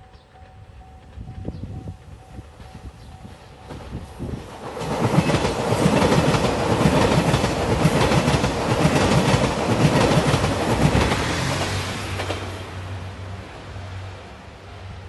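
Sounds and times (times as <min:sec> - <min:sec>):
train wheels clicking over rail joints: 0:00.0 - 0:12.6
train rumble: 0:00.0 - 0:15.0.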